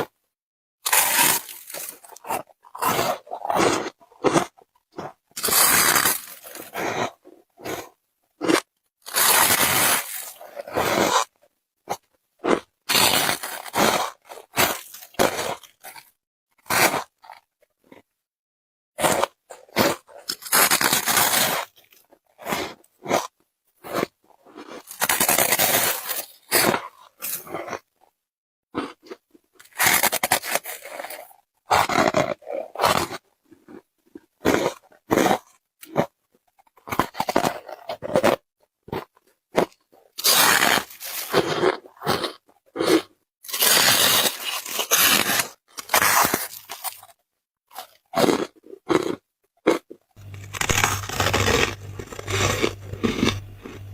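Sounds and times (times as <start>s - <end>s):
chewing crunchy ice: 0.8s - 18.1s, 19.0s - 28.1s, 28.8s - 53.9s.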